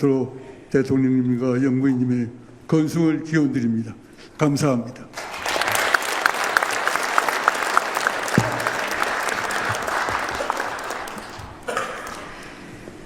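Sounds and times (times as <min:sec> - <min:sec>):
audience applauding: 0:05.2 - 0:12.5
low thump: 0:08.4 - 0:08.8.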